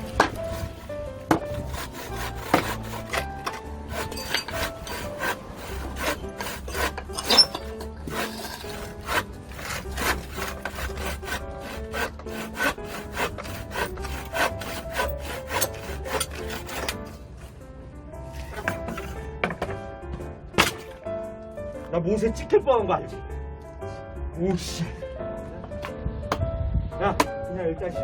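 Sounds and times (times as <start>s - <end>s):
hand saw cutting wood: 0.0s - 17.5s, 18.3s - 19.7s
background music: 0.0s - 28.0s.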